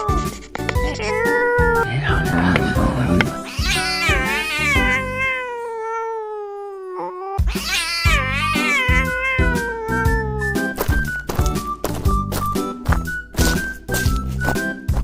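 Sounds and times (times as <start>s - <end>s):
cat meowing: 0.0s - 10.7s
background music with steady beat: 1.7s - 4.3s.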